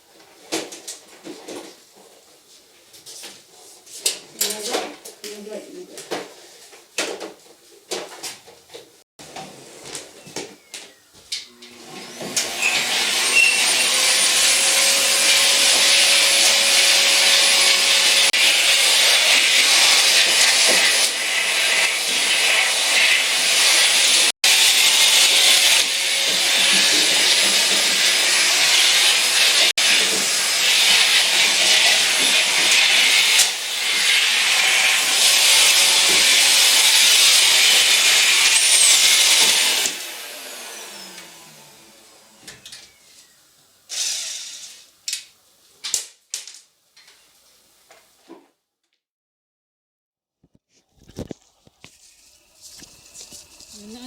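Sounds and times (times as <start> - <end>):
power tool whirring: 11.4 - 43.3, 43.9 - 44.9.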